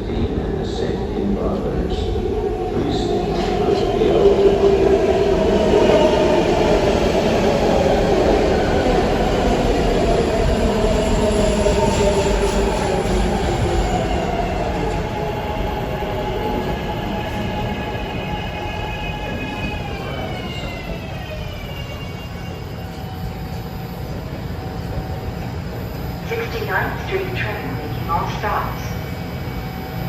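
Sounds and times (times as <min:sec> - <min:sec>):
train wheels rumbling on rails: 0:00.0 - 0:23.0.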